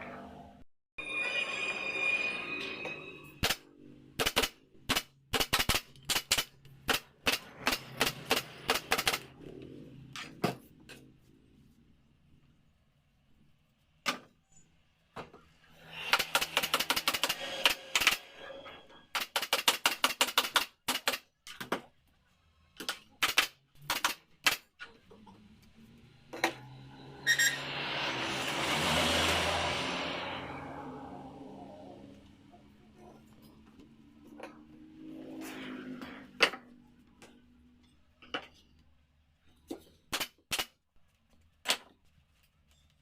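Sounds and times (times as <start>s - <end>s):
rushing noise: 26.6s - 32.4s.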